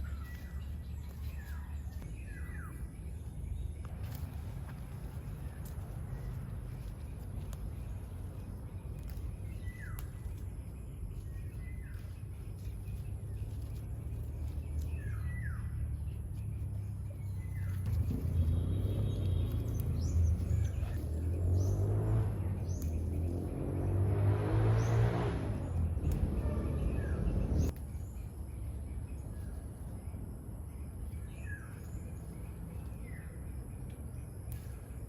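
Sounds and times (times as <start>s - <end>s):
bird chirping: 0.0s - 35.0s
steady low rumble: 0.0s - 35.0s.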